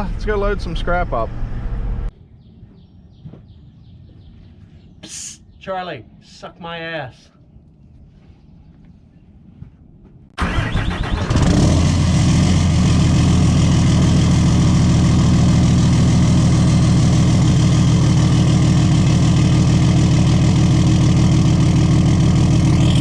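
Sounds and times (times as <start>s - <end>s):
diesel truck engine cranking and idling: 10.4s - 23.0s.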